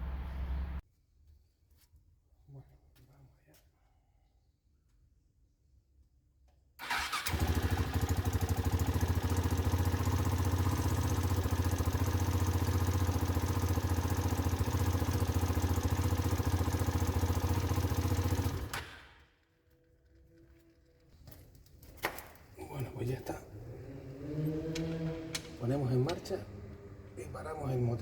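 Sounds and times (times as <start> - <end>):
motorcycle engine idling: 6.8 - 18.8, 25.0 - 28.0.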